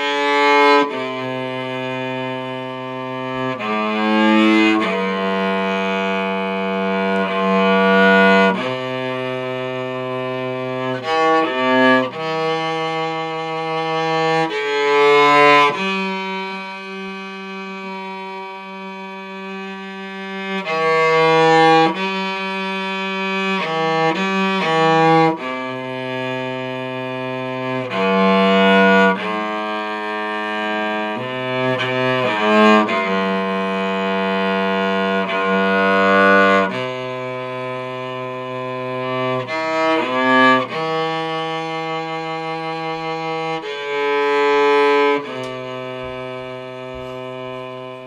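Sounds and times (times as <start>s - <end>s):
cello playing slow melody: 0.0s - 48.0s.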